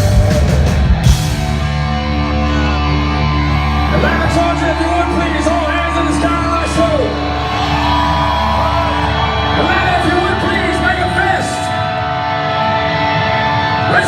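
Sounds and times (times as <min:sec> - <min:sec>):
guitar chords: 0:00.0 - 0:10.4
live hard rock band: 0:00.0 - 0:14.0.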